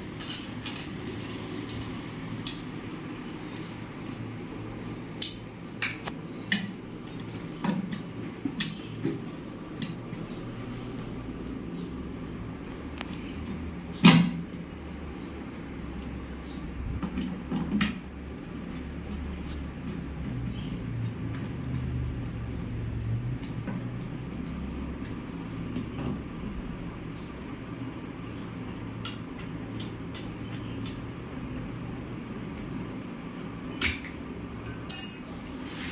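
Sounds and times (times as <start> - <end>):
low mechanical hum: 0.0 - 35.9
sharp metallic clinks and knocks: 34.6 - 35.5.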